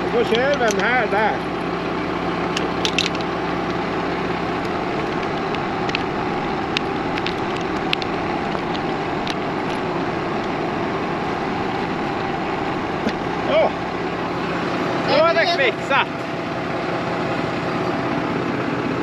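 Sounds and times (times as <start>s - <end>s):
tractor engine droning: 0.0s - 19.0s
hand tools clicking on metal: 0.2s - 0.9s, 2.5s - 3.8s.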